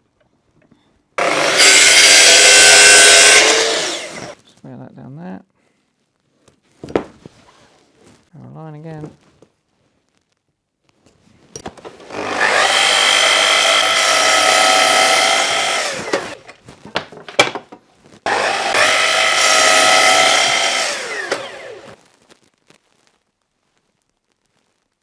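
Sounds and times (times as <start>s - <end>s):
power saw cutting plywood: 1.2s - 4.4s, 11.7s - 16.6s, 18.3s - 22.0s.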